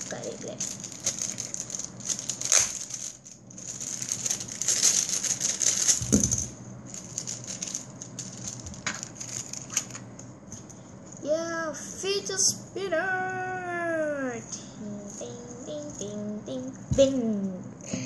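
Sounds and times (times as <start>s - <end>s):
plastic packaging crinkling: 0.0s - 10.2s.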